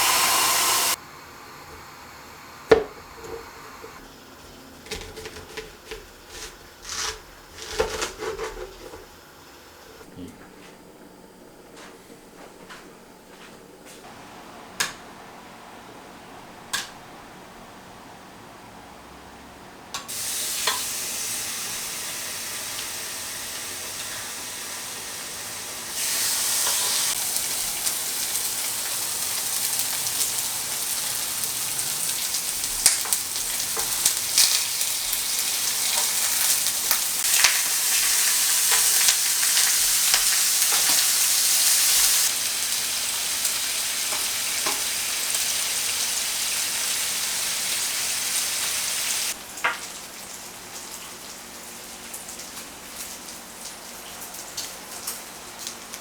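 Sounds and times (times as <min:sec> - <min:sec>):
pork sizzling on a grill pan: 0:00.0 - 0:05.0, 0:20.1 - 0:56.0.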